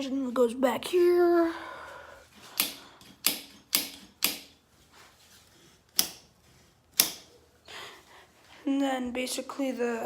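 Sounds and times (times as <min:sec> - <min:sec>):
sharp mechanical clicks: 0:02.5 - 0:04.6, 0:05.9 - 0:06.3, 0:06.9 - 0:07.3.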